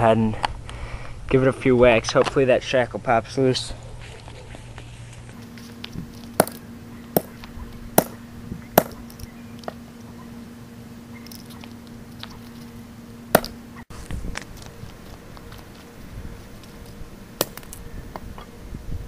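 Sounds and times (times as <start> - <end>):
sledgehammer striking padlock: 6.4 - 6.6, 7.2 - 7.4, 8.0 - 8.2, 8.8 - 9.3, 13.4 - 13.6, 17.4 - 17.8.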